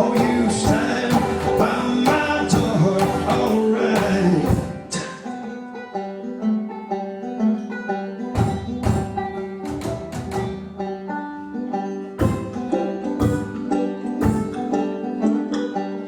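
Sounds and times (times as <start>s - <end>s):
drum hits: 0.0s - 5.1s, 8.4s - 10.7s, 12.2s - 14.7s
plucked string melody: 0.0s - 16.0s.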